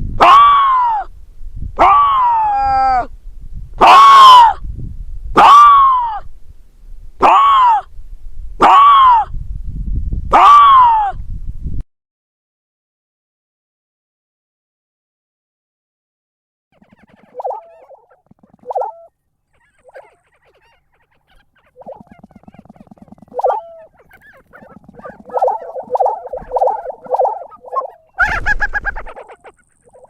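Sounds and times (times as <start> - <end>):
animal rattling pulsed calls: 16.8 - 30.0.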